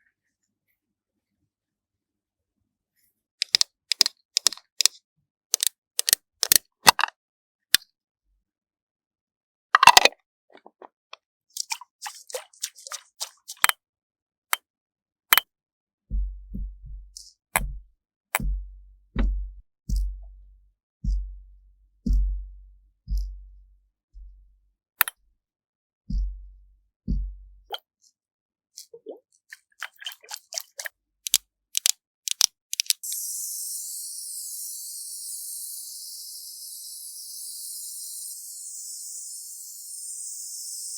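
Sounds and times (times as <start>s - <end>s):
sharp clicks and taps: 3.4s - 7.1s, 16.5s - 18.6s, 30.2s - 33.1s
small quick clicks: 3.4s - 7.1s, 30.8s - 33.2s
soft deep thuds: 16.1s - 20.3s.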